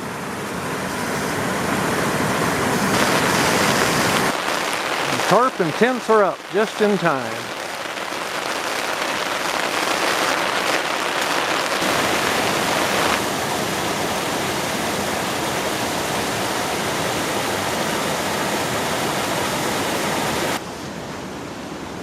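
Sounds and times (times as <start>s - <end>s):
rain falling: 0.0s - 20.6s
river rapids rushing: 0.0s - 20.6s.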